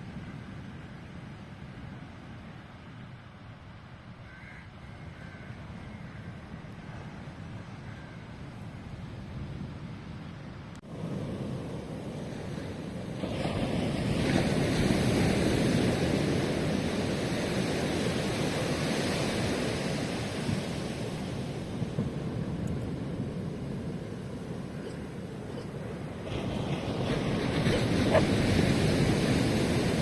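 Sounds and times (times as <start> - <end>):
ocean wave breaking: 10.9 - 30.0.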